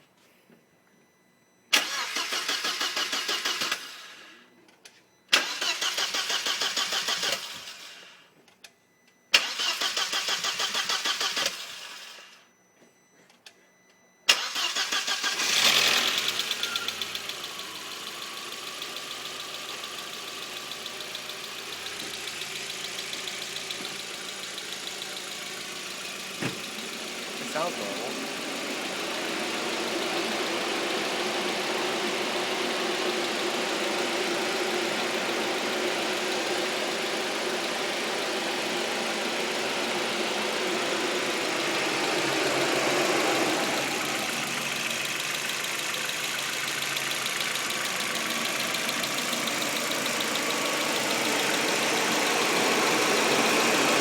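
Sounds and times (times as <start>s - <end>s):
starter cranking engine: 1.7s - 4.1s, 5.3s - 8.0s, 9.4s - 12.1s, 14.3s - 30.5s, 41.5s - 54.0s
car engine idling: 14.4s - 54.0s.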